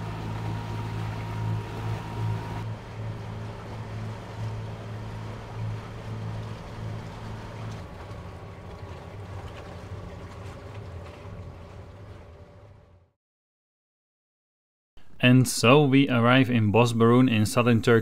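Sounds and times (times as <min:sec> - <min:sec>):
boat engine humming: 0:00.0 - 0:13.2
water noise: 0:00.0 - 0:13.2.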